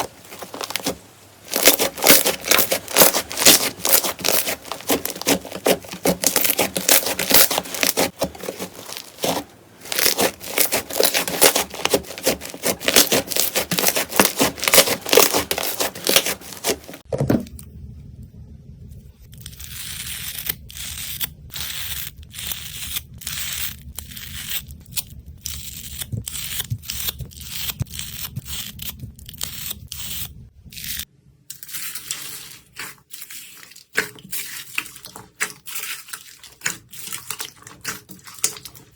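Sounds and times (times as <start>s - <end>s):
slime crackling and popping: 0.0s - 17.1s
steady low hum: 0.0s - 31.5s.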